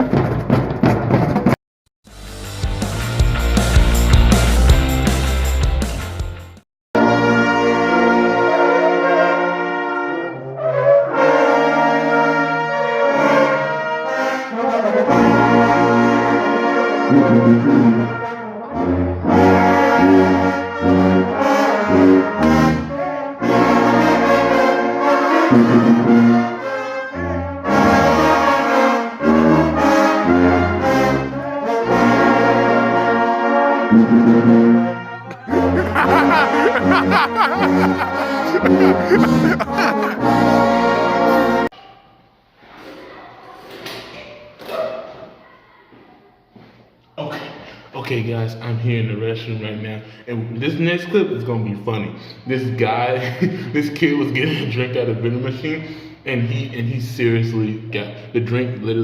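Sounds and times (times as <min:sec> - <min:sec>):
brass band playing chords: 0:02.1 - 0:41.7.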